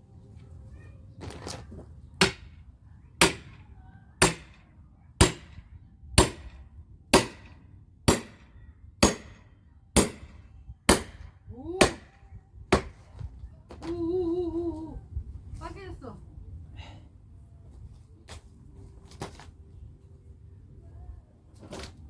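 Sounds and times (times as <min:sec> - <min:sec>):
splitting tool striking firewood: 0:02.2 - 0:02.6, 0:03.2 - 0:03.6, 0:04.2 - 0:04.6, 0:05.2 - 0:05.6, 0:06.2 - 0:09.4, 0:10.0 - 0:13.1.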